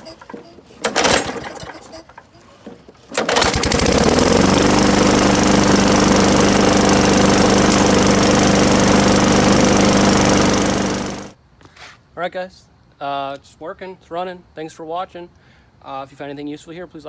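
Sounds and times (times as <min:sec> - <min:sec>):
lawnmower engine starting and running: 0:00.0 - 0:11.4.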